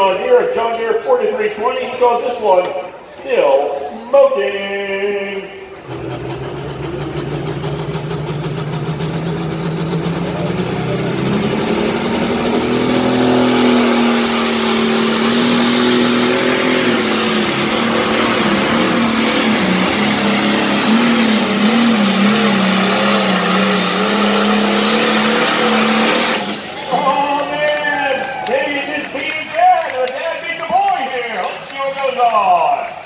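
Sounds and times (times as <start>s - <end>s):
tractor diesel engine at full power: 5.6s - 29.0s.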